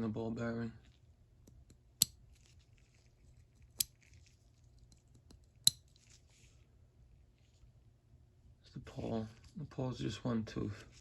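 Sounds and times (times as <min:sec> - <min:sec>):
faint rustling: 0:05.9 - 0:07.8.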